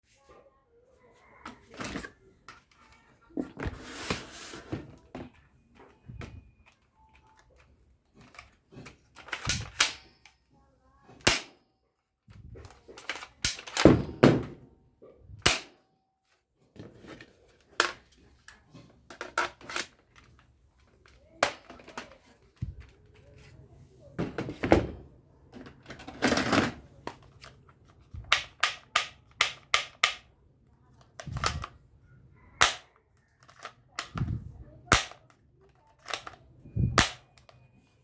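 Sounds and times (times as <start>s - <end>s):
toy gun firing cracks: 9.2s - 10.1s, 11.2s - 11.6s, 13.0s - 14.0s, 15.4s - 15.8s, 28.3s - 30.3s, 32.6s - 32.9s, 34.9s - 35.3s, 37.0s - 37.5s.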